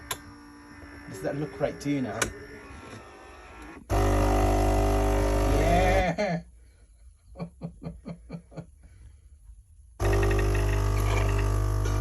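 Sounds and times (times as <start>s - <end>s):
coffee machine pump buzzing: 0.0s - 6.0s, 10.0s - 12.0s.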